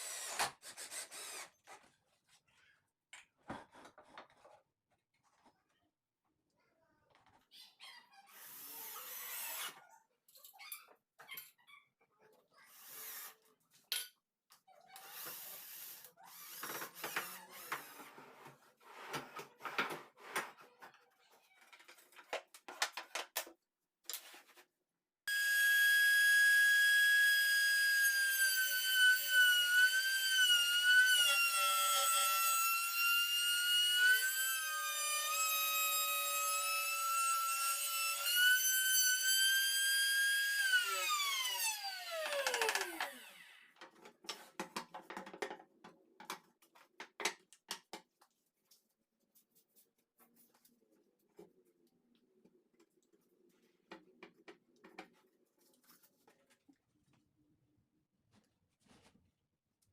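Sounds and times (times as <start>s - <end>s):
wood and tools clicking and rubbing: 0.2s - 5.7s, 16.3s - 24.7s, 42.1s - 57.2s
table saw whining: 25.3s - 43.6s.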